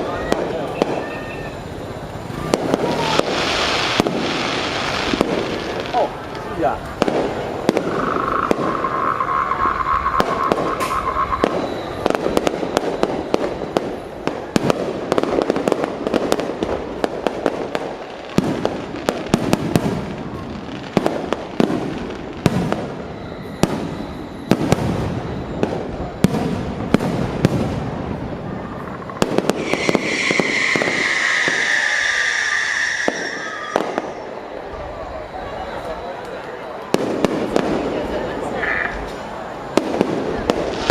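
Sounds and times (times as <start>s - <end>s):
fireworks bangs and crackling: 0.0s - 40.9s
falling high tone: 8.0s - 12.0s, 29.6s - 36.2s.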